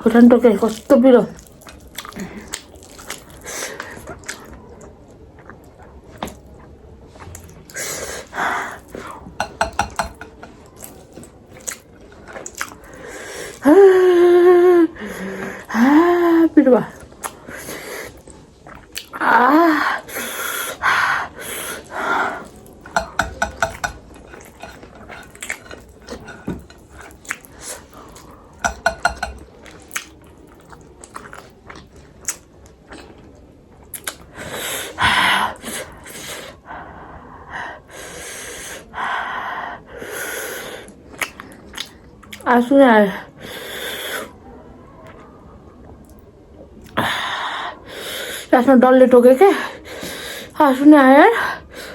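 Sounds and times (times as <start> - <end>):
chewing: 0.6 - 13.6, 16.9 - 19.2, 21.8 - 34.4, 40.9 - 42.4
dishes clicking: 9.4 - 10.6, 23.0 - 26.8, 28.6 - 29.5.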